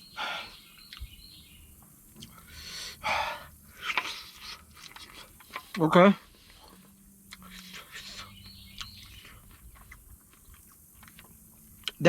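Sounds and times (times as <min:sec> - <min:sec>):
man hissing breaths: 0:00.1 - 0:00.6, 0:02.3 - 0:03.9.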